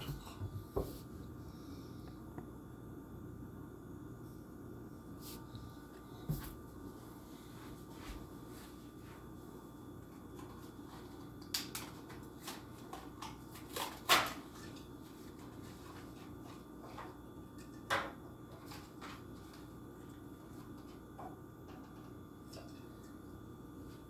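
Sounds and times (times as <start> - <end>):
blister package clicks and crinkles: 11.4 - 14.8
sharp plastic crack: 11.5 - 14.5.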